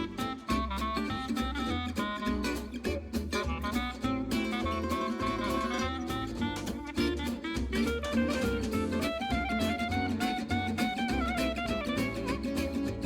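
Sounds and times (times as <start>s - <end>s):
upbeat jazzy instrumental music: 0.0s - 13.0s.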